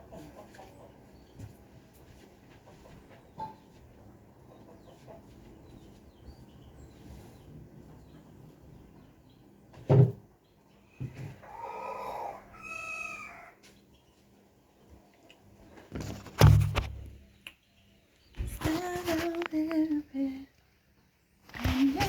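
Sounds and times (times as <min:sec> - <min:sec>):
chicken calls: 0:10.7 - 0:13.9
loud thump: 0:16.4 - 0:17.0.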